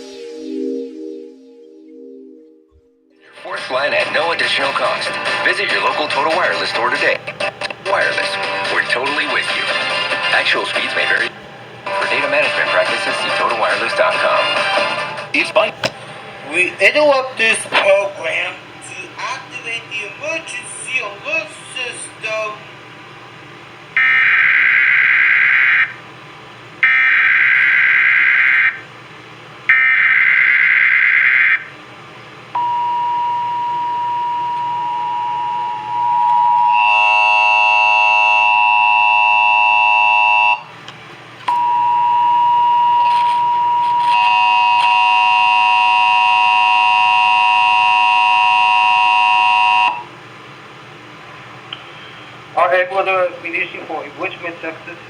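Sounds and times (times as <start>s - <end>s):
higher tones: 0.0s - 21.5s, 32.6s - 40.7s
two-tone attention signal: 32.6s - 40.7s, 41.5s - 50.0s.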